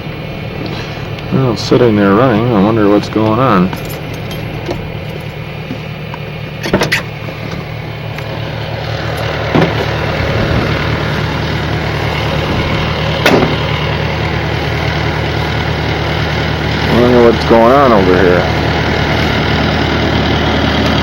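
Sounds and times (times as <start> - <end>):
engine running steadily: 0.0 - 21.0
sharp knocks: 9.5 - 9.9, 13.2 - 13.7.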